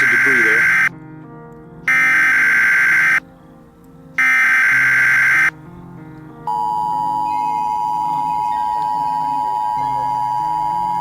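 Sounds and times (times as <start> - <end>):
harsh digital data tones: 0.0 - 0.9, 1.9 - 3.2, 4.2 - 5.5
two-tone attention signal: 0.0 - 0.9, 1.9 - 3.2, 4.2 - 5.5
background music: 0.0 - 11.0.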